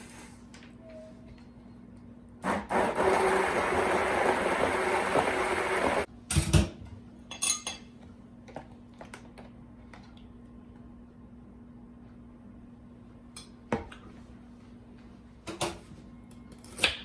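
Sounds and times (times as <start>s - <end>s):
stick blender whirring: 2.4s - 6.1s
utensils clinking against container: 7.3s - 7.9s.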